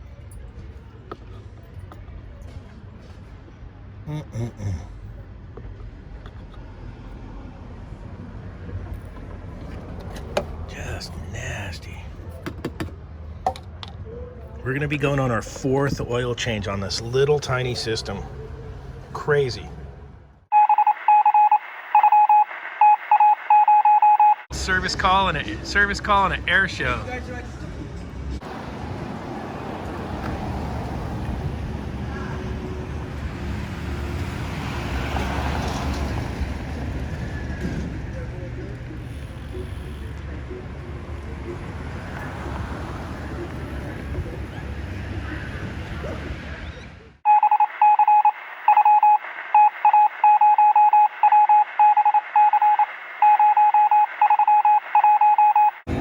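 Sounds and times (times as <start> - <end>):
electronic morse-like beeping: 20.5 - 24.5, 47.3 - 55.9.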